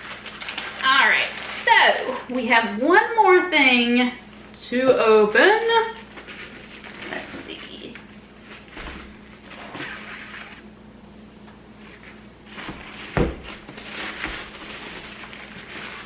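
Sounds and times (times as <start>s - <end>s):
packaging rustling: 0.0s - 2.2s, 5.8s - 10.6s, 11.8s - 16.0s.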